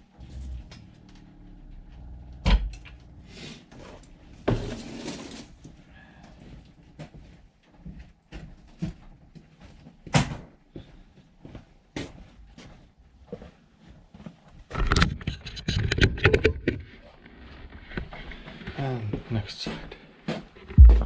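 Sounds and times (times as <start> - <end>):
scraping rustle: 3.9 - 5.6.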